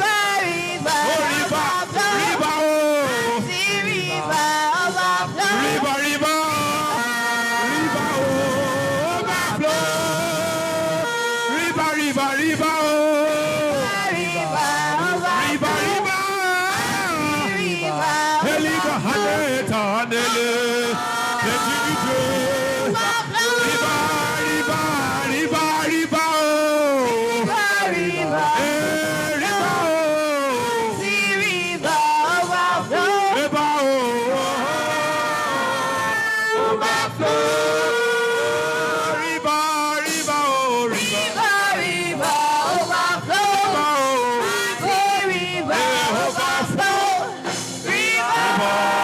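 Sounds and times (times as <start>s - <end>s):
voices singing slow chant: 0.0s - 49.0s.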